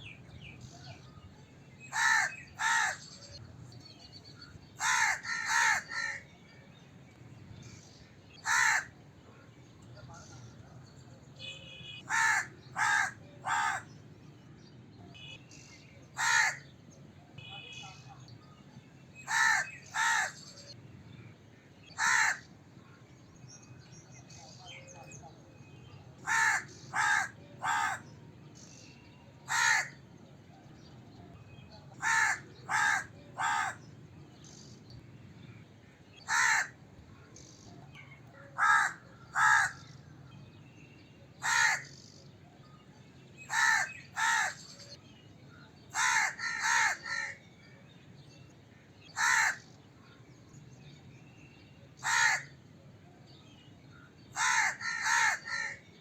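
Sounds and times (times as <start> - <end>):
crow cawing: 1.9 - 3.0, 4.8 - 6.2, 8.4 - 8.9, 12.0 - 13.9, 16.2 - 16.6, 19.3 - 20.4, 22.0 - 22.5, 26.2 - 28.1, 29.5 - 30.0, 32.0 - 33.8, 36.2 - 36.8, 38.6 - 39.9, 41.4 - 41.9, 43.5 - 44.6, 46.0 - 47.4, 49.2 - 49.7, 52.0 - 52.5, 54.4 - 55.8.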